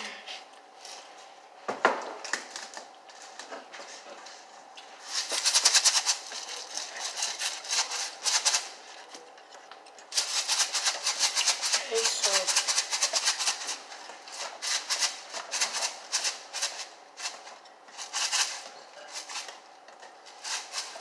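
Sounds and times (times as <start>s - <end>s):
sprinkles rattling in container: 10.1s - 19.5s.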